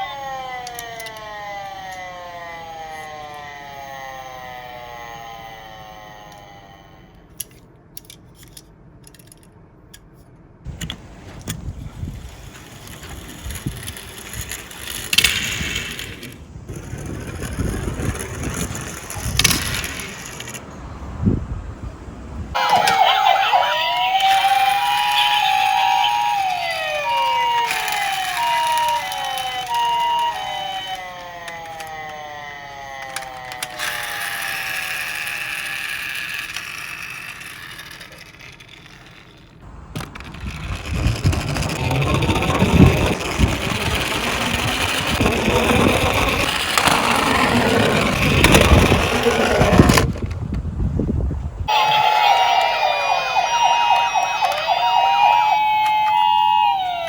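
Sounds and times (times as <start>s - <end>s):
two-tone siren: 0.0s - 7.2s, 22.6s - 38.0s, 41.0s - 49.8s, 51.7s - 57.0s
toy cars rolling down slope: 0.0s - 9.5s, 11.5s - 20.8s, 22.5s - 50.4s, 51.7s - 57.0s
toy cars clattering: 0.0s - 20.8s, 22.6s - 50.4s, 51.7s - 57.0s.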